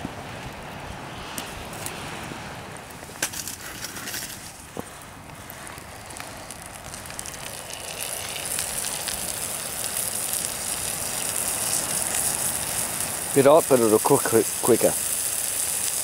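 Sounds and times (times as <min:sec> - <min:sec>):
campfire crackling: 0:00.0 - 0:16.0
high hiss: 0:03.2 - 0:16.0.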